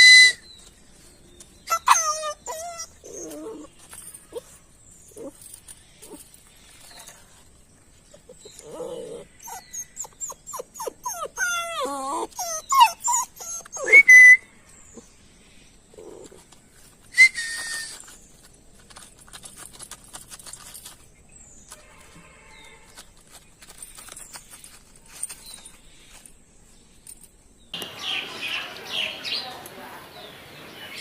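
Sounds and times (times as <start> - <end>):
dog whining and yelping: 0.0 - 0.5, 1.6 - 6.2, 8.1 - 14.4, 16.0 - 20.7.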